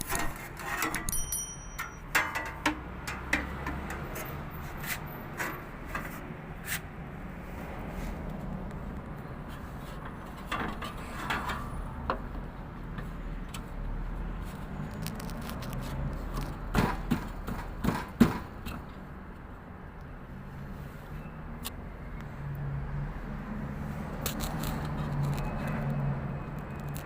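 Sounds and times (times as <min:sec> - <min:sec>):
fan blade clicks and knocks: 0:00.0 - 0:04.4, 0:10.0 - 0:13.7.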